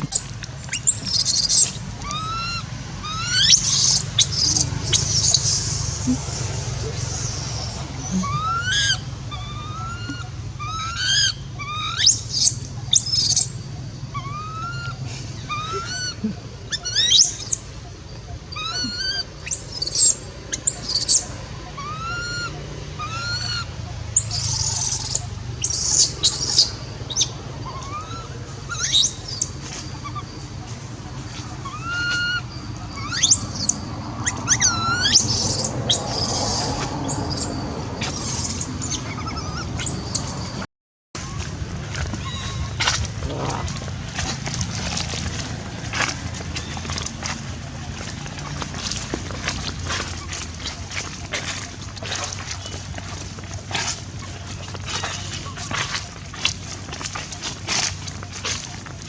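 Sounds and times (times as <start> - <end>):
baby monkey crying: 0.0 - 40.6, 42.2 - 43.8.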